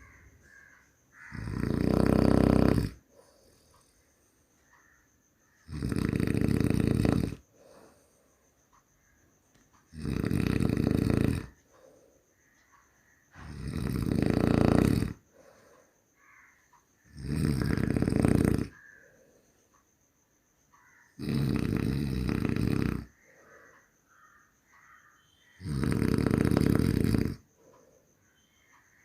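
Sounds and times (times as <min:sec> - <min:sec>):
person snoring: 0:01.3 - 0:03.9, 0:05.6 - 0:08.2, 0:09.9 - 0:11.6, 0:13.4 - 0:15.7, 0:17.1 - 0:18.8, 0:21.2 - 0:23.2, 0:25.6 - 0:27.5
quiet breathing: 0:02.0 - 0:09.9, 0:10.9 - 0:21.1, 0:22.6 - 0:25.6, 0:26.6 - 0:29.0.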